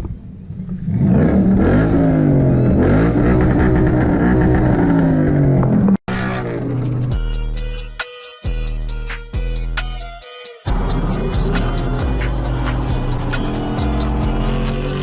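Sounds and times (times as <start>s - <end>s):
car engine revving: 0.8s - 7.1s, 10.7s - 15.0s
music with steady beat: 6.8s - 15.0s.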